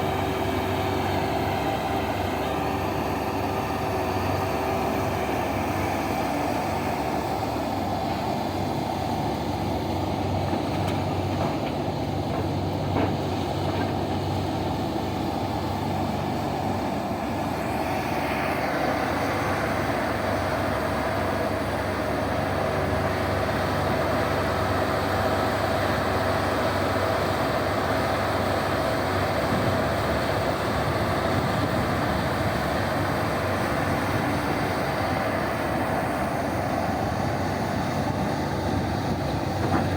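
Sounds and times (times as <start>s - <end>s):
big diesel engines running: 0.0s - 39.9s.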